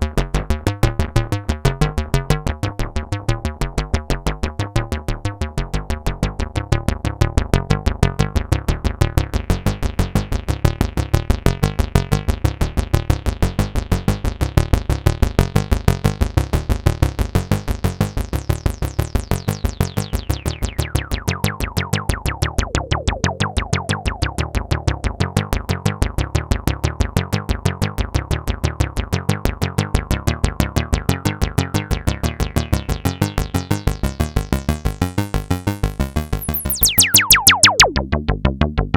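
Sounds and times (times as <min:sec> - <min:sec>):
synthesizer sequenced pattern: 0:17.2 - 0:24.8, 0:31.0 - 0:38.0.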